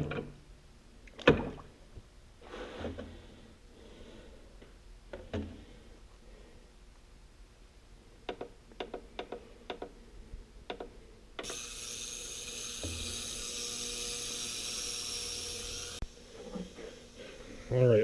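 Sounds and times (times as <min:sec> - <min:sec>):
ultrasonic cleaner hiss and buzz: 0:11.4 - 0:18.0.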